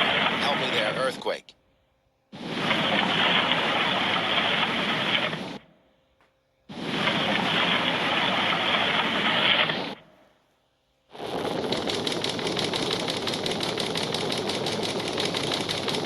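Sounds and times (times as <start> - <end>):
loud rushing earthquake noise: 0.0 - 1.1, 2.4 - 5.6, 6.7 - 10.0, 11.1 - 16.0.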